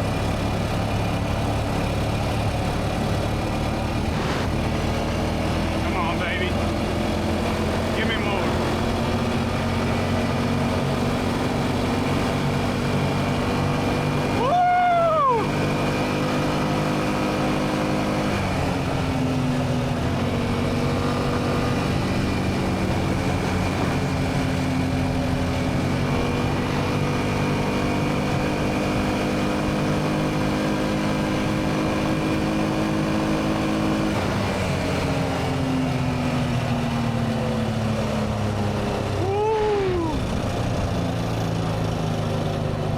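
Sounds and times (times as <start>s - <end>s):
atv engine running: 0.0s - 42.9s
rising and falling whoop: 14.3s - 15.8s, 39.1s - 40.6s.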